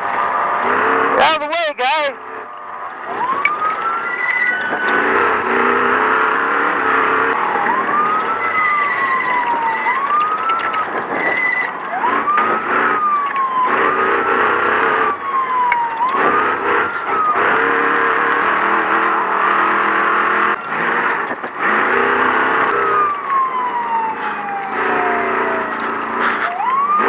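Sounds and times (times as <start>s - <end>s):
racing engine: 0.0s - 27.0s
wailing electronic siren: 0.0s - 27.0s.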